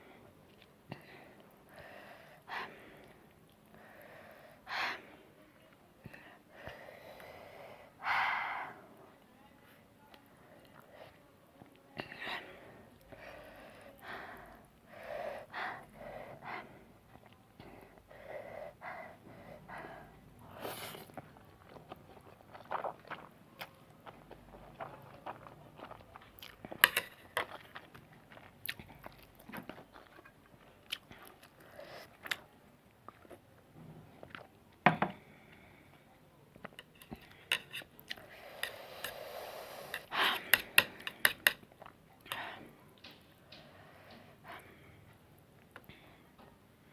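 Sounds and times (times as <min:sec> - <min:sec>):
person chewing noodles: 0:20.6 - 0:33.5, 0:36.6 - 0:42.6.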